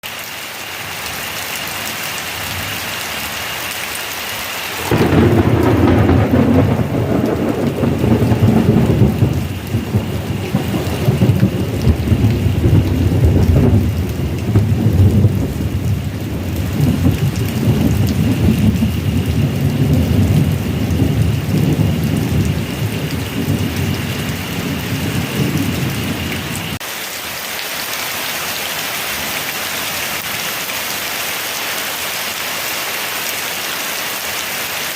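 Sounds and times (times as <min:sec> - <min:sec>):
heavy rain falling: 0:00.0 - 0:34.9
rolling thunder rumble: 0:04.7 - 0:26.8.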